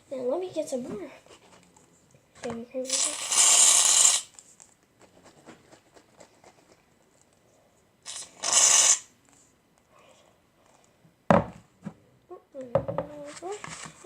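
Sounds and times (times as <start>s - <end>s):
aerosol can spraying: 2.9s - 4.3s, 8.1s - 9.1s.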